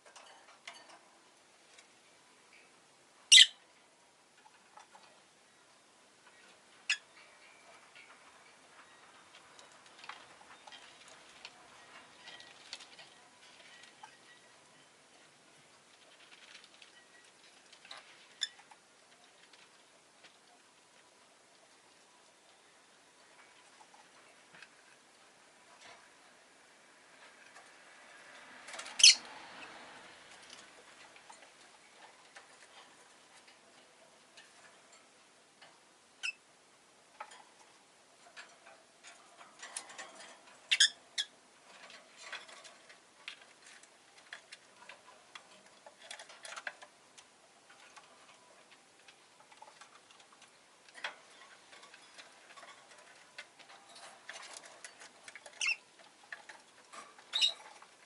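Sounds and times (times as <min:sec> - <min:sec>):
lovebird chirping: 0:03.3 - 0:03.6, 0:29.0 - 0:29.2, 0:36.2 - 0:36.4, 0:40.7 - 0:41.3, 0:55.5 - 0:55.9, 0:57.3 - 0:57.6.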